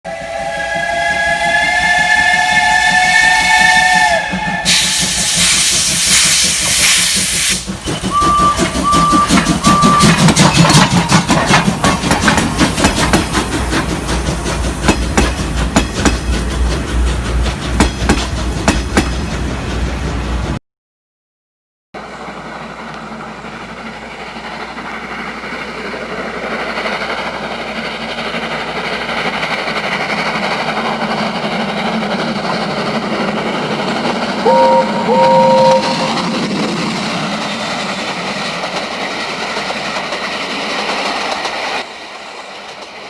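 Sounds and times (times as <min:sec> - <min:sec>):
steam train whistle: 0:00.1 - 0:10.2, 0:34.4 - 0:36.5
steam hissing: 0:00.1 - 0:18.6
train wheels knocking: 0:02.6 - 0:20.5, 0:24.5 - 0:43.0
short high toots: 0:34.4 - 0:36.5.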